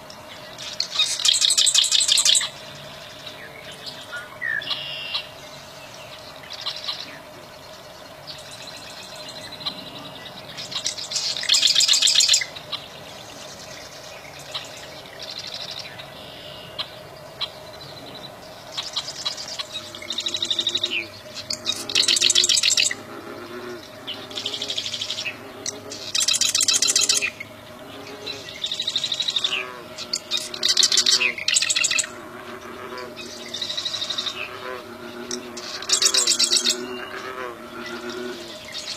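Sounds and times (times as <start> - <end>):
bird chirping rapidly: 26.0 - 27.5, 28.2 - 32.1.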